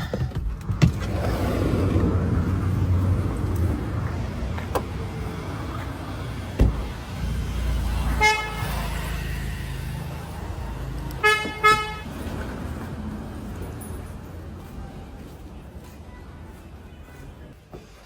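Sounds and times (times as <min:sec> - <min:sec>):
low traffic rumble: 0:00.0 - 0:18.0
sharp thump: 0:06.6 - 0:07.0
vehicle horn toots: 0:08.2 - 0:08.8, 0:11.2 - 0:12.1.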